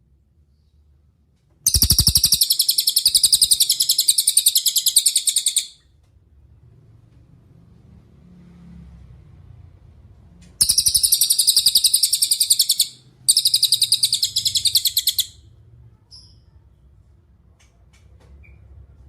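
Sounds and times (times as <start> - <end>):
bird trilling: 1.7 - 5.8, 10.6 - 15.4.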